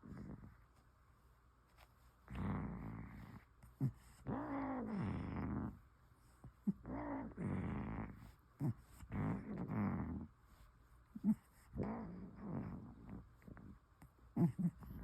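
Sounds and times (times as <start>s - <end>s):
cat snoring: 2.3s - 5.8s, 6.6s - 10.3s, 11.2s - 13.7s, 14.4s - 15.0s.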